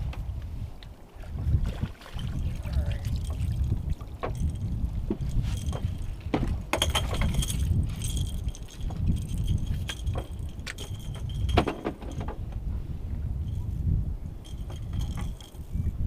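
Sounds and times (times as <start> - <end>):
wind and water rumble: 0.0 - 16.0
fishing tackle clinking: 2.2 - 12.2, 14.4 - 15.7.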